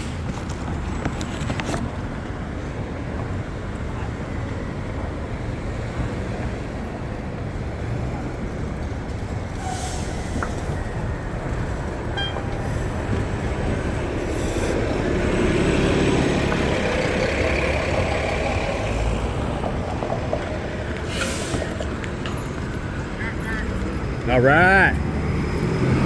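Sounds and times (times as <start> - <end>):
rumble of passing traffic: 0.0 - 26.0
vehicle passing close: 23.8 - 26.0.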